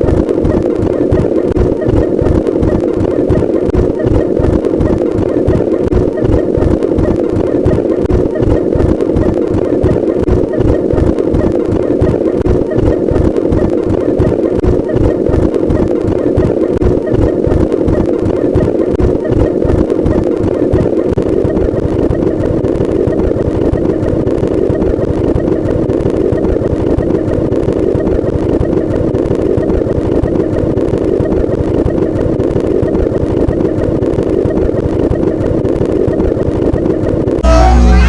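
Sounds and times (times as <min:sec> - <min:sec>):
rough engine-like drone: 0:37.3 - 0:38.0.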